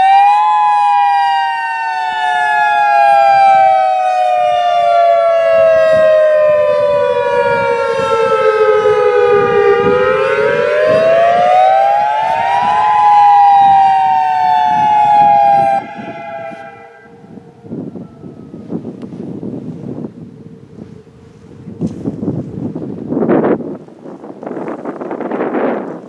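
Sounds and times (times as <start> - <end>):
warning siren wailing: 0.0 - 19.3
wind noise on microphone: 0.0 - 26.0.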